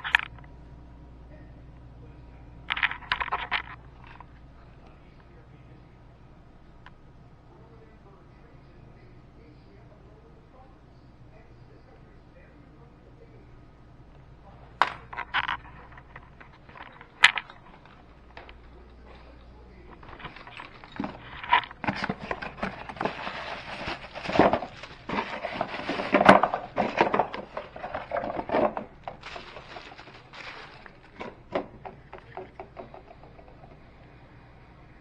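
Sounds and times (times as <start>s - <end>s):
parts knocking and scraping: 0.0s - 0.4s, 2.7s - 4.3s, 14.7s - 34.1s.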